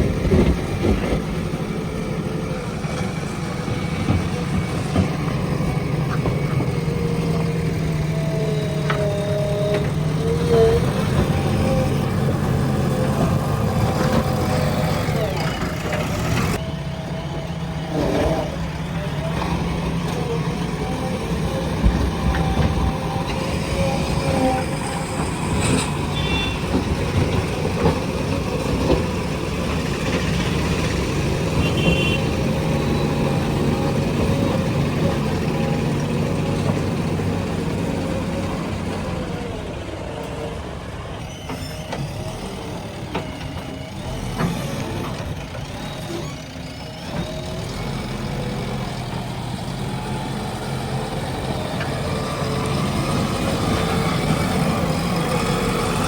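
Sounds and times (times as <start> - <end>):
diesel engine under load: 0.0 - 56.0.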